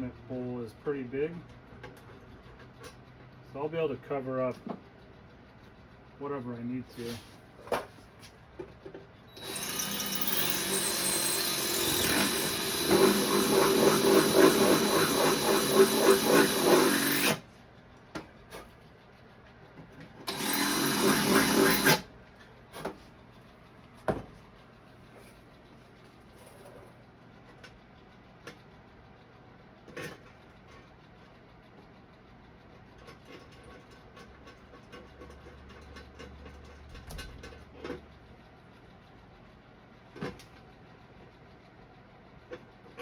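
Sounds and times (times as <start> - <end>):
handheld power tool running: 9.3 - 17.4, 20.3 - 22.1.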